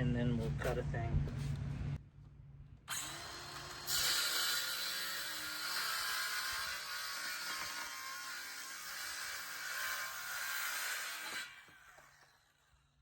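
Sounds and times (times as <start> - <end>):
circular saw cutting plywood: 2.9 - 12.9.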